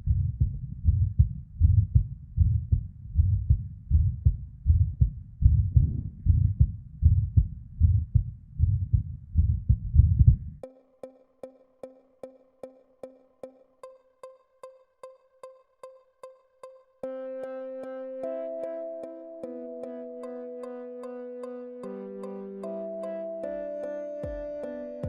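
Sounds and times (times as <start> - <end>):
heart murmur: 0.0 - 10.6
heartbeat thuds: 0.0 - 10.6
electronic music with ticking beat: 18.2 - 25.0.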